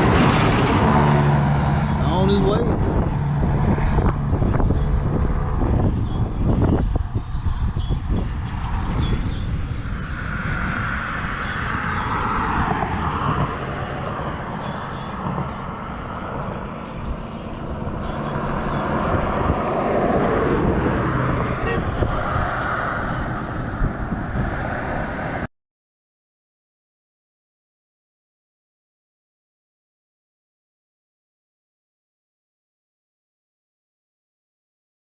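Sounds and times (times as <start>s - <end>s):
road and wind noise: 0.0s - 25.5s
vehicle engine rumble: 0.0s - 25.5s.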